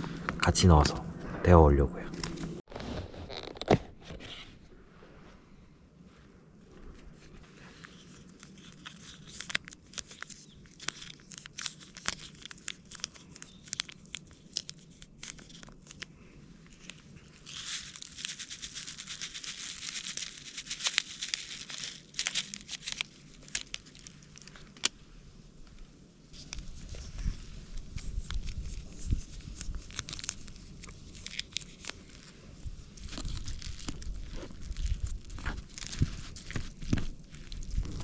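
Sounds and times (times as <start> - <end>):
plastic packaging crinkling and tearing: 7.5 - 25.0, 26.3 - 38.0.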